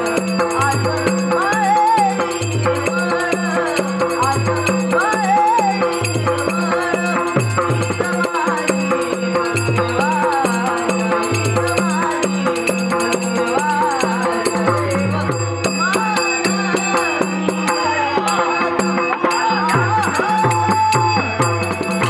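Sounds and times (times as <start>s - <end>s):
drum rhythmic strokes: 0.0s - 22.0s
light jingling percussion: 0.0s - 22.0s
man singing: 0.0s - 22.0s.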